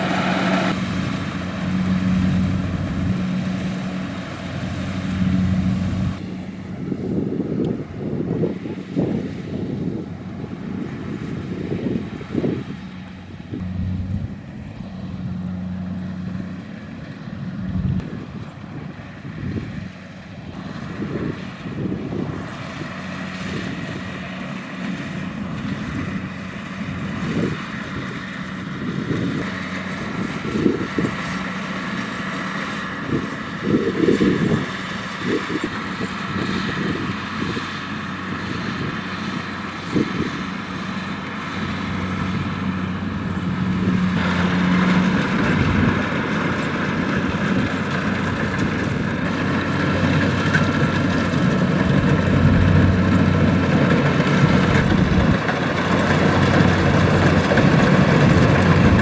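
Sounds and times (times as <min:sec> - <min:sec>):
diesel engine humming: 0:00.0 - 0:59.0
low buffeting: 0:13.4 - 0:18.1.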